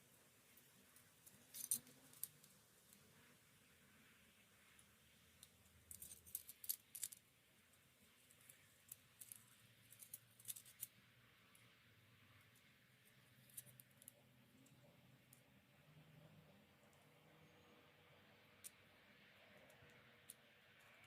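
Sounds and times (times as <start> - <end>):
small parts clicking and tapping: 0.5 - 3.3, 4.6 - 11.8, 12.4 - 15.5, 18.4 - 21.0.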